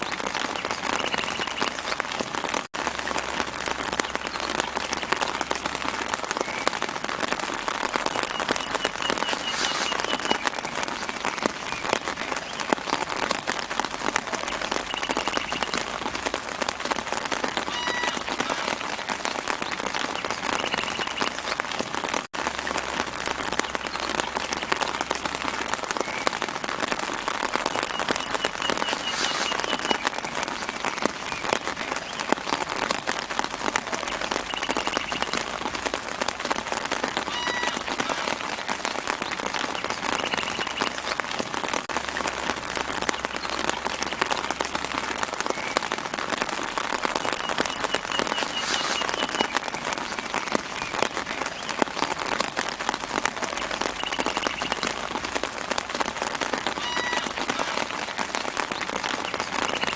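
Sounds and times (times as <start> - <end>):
rain pattering on leaves: 0.0 - 59.9.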